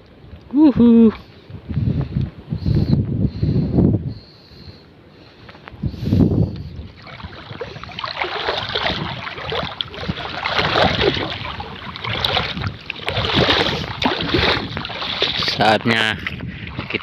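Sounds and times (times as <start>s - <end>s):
wind buffeting microphone: 0.0s - 17.0s
sea water splashing: 6.5s - 17.0s.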